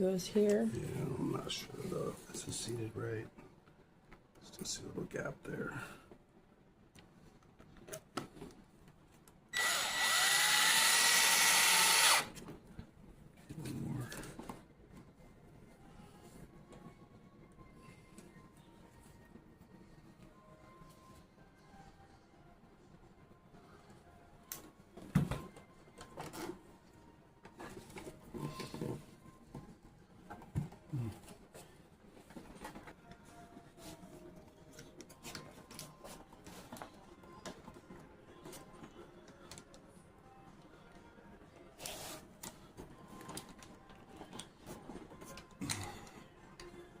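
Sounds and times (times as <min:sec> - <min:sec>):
power drill whine: 0:09.5 - 0:12.3.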